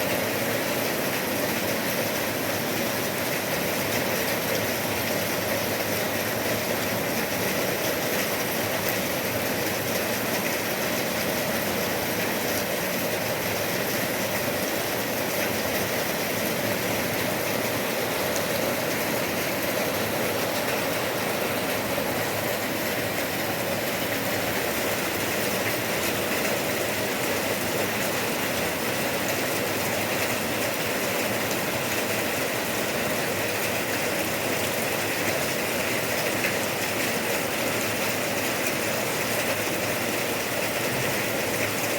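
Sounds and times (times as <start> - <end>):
steady rain falling: 0.0 - 41.9.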